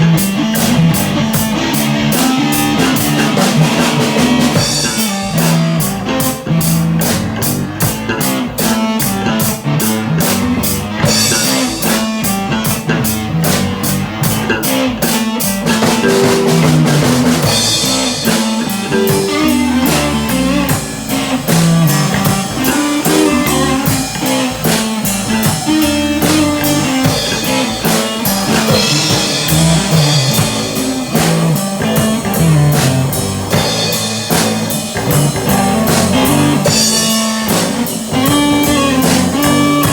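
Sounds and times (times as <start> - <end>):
rock band playing: 0.0 - 39.9
sharp regular drumming: 15.0 - 39.9.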